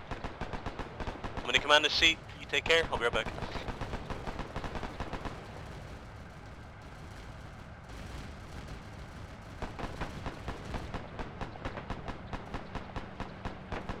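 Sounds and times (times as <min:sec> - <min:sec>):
low battlefield rumble: 0:00.0 - 0:14.0
machine-gun fire: 0:00.0 - 0:14.0.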